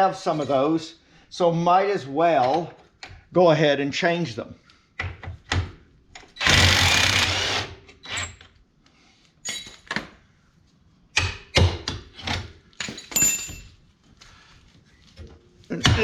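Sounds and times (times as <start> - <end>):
loud burst on bolt: 6.4 - 7.7
metal clinks and knocks: 9.4 - 10.2, 12.7 - 13.9.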